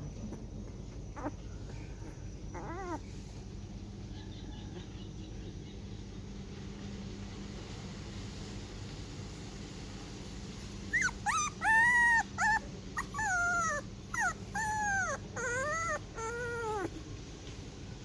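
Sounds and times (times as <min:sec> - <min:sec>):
puppy whining: 0:00.0 - 0:03.5, 0:10.9 - 0:17.0.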